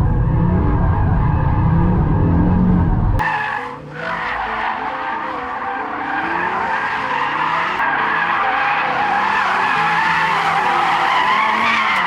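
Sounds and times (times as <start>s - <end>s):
car engine running: 0.0s - 3.2s
car tyres squealing: 0.7s - 12.0s.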